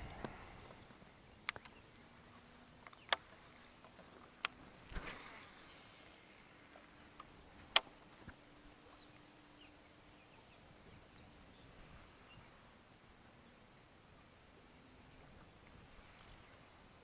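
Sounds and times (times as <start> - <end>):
faint ticks: 0.0 - 2.1, 2.8 - 8.4
faint steady hum: 0.0 - 17.0.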